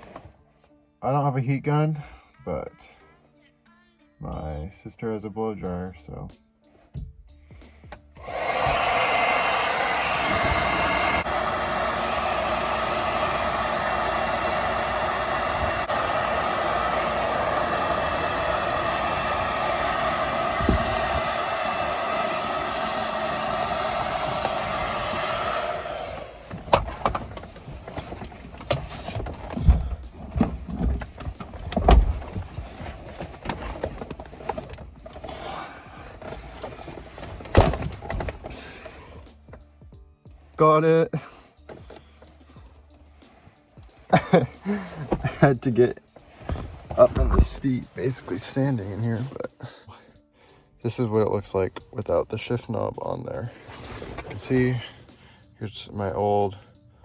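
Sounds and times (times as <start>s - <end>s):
hair dryer blowing: 8.2s - 29.8s, 44.0s - 46.0s, 46.6s - 49.5s.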